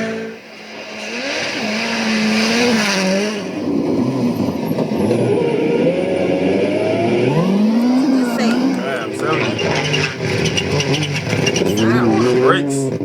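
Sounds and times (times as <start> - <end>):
rally car engine revving: 0.0 - 13.0
tyres on snow: 7.1 - 13.0.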